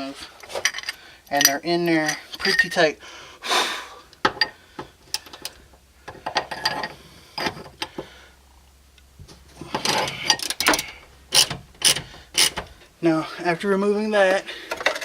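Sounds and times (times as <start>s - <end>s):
ratchet wrench clicking: 9.9s - 12.6s.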